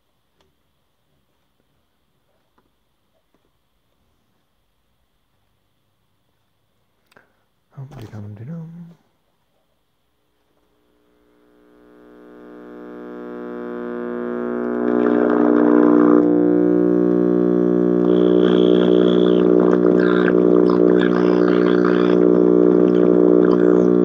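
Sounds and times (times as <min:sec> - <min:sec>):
faint radio station sound: 0:07.7 - 0:24.0
tube radio hum: 0:07.7 - 0:24.0.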